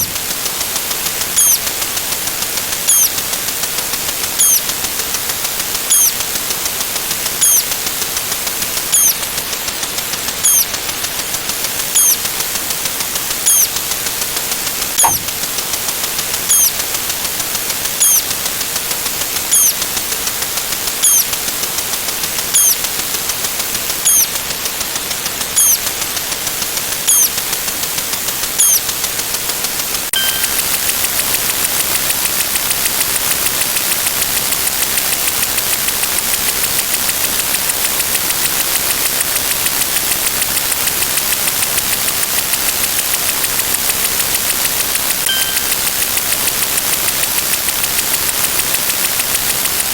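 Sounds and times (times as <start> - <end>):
fine rapid ticking: 0.0 - 49.9
short high chirps: 1.4 - 1.6, 13.5 - 13.7, 15.0 - 15.3, 16.5 - 16.8, 18.0 - 18.2, 21.0 - 21.3, 22.6 - 22.8, 24.1 - 24.3, 25.6 - 25.9, 27.1 - 27.3, 28.6 - 28.9, 30.2 - 32.2, 45.1 - 47.5.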